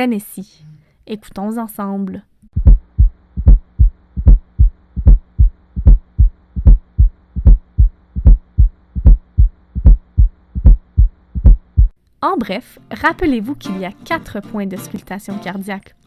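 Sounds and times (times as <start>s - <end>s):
faint steady hum: 0.0s - 12.9s
heartbeat thumps: 2.5s - 12.0s.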